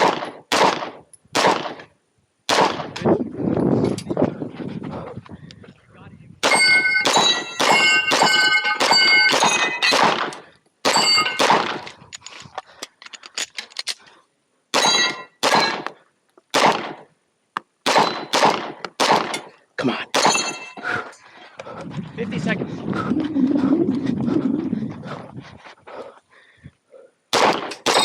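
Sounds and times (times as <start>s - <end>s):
rapid gunshots: 0.0s - 1.8s, 2.5s - 3.0s, 6.4s - 11.9s, 14.8s - 15.8s, 16.6s - 17.0s, 17.9s - 19.4s, 27.3s - 28.0s
steel plates ringing: 6.4s - 10.0s, 10.9s - 11.4s, 14.8s - 15.8s, 20.2s - 20.8s.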